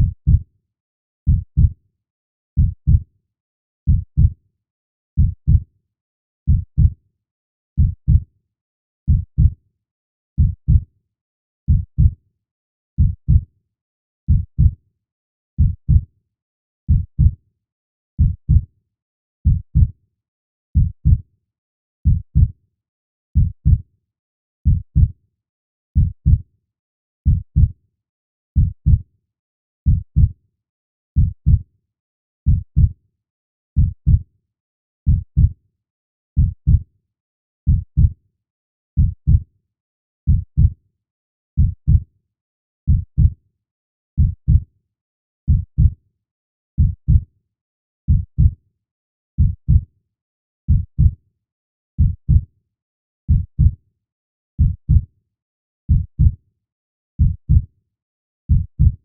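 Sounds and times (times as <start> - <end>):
slow heartbeat thumps: 58.5 - 58.9.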